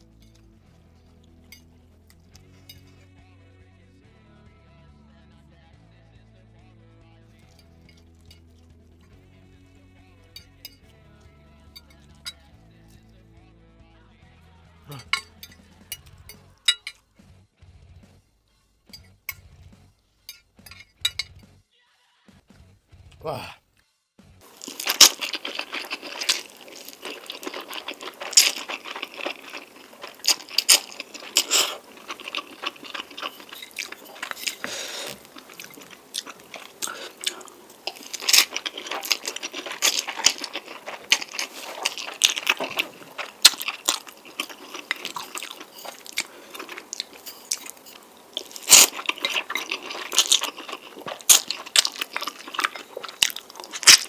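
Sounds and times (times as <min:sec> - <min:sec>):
crunchy chewing: 0:24.4 - 0:54.0.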